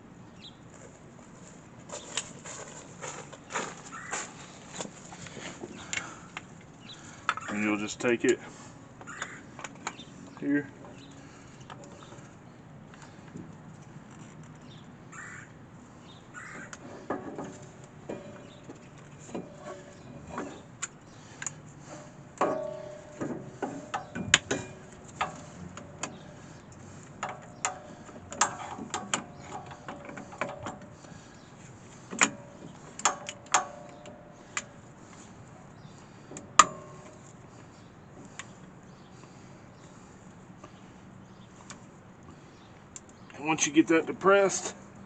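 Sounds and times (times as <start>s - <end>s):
piston tool clicking and creaking: 11.6s - 14.8s, 16.5s - 31.2s.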